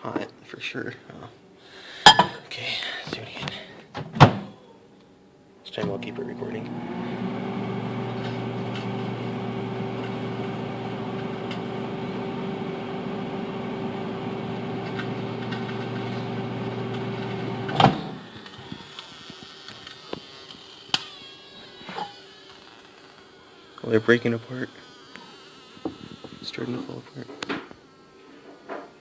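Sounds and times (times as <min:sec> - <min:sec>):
microwave oven humming: 0:05.8 - 0:18.3.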